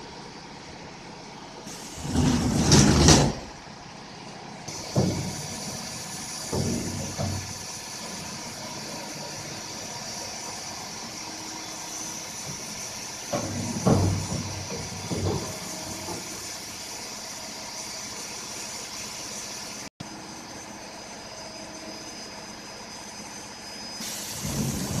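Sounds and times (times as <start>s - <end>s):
machining center humming and whining: 0.0s - 25.0s
hiss: 1.7s - 2.4s, 4.7s - 19.9s, 24.0s - 25.0s.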